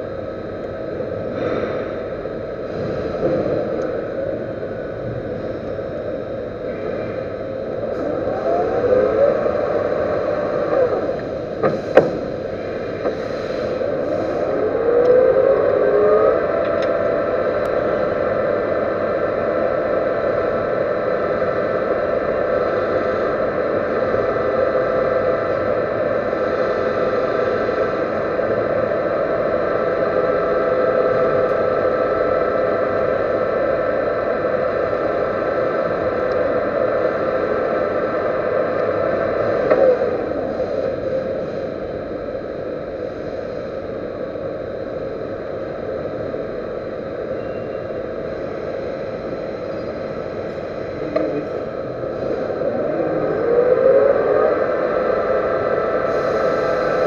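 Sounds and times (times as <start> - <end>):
metal lathe whining: 6.6 - 20.3.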